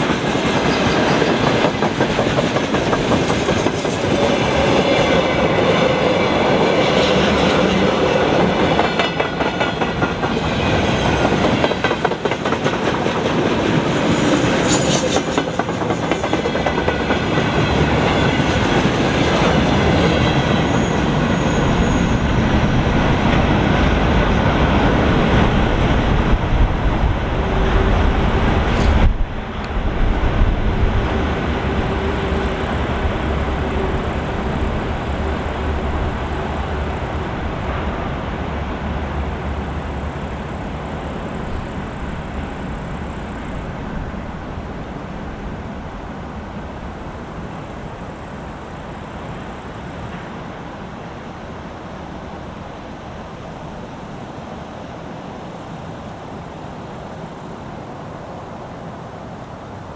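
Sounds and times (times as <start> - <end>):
train wheels clicking over rail joints: 0.0 - 23.6.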